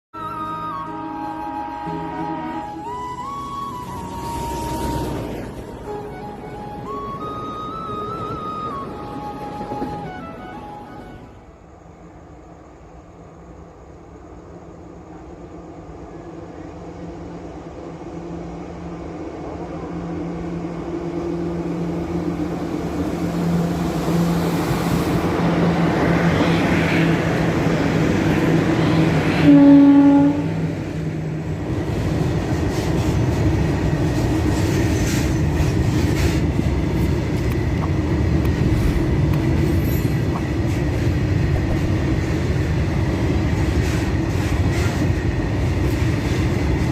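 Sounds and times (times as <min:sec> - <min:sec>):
electric locomotive hum: 0:00.2 - 0:46.9
wheels rumbling on rail: 0:00.2 - 0:46.9
train horn blast: 0:00.6 - 0:03.1, 0:28.7 - 0:30.7.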